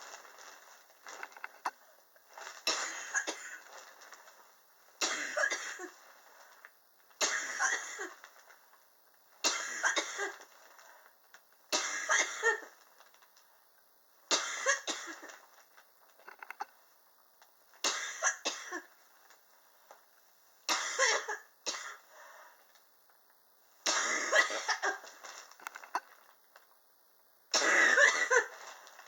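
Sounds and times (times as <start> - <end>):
person coughing: 2.7 - 3.6, 14.3 - 15.3, 20.7 - 22.0, 23.9 - 25.0, 27.6 - 28.6.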